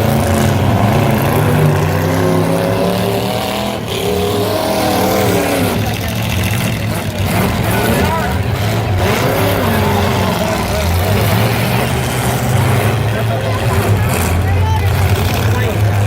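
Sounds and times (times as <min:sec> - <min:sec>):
car engines revving: 0:00.0 - 0:16.0.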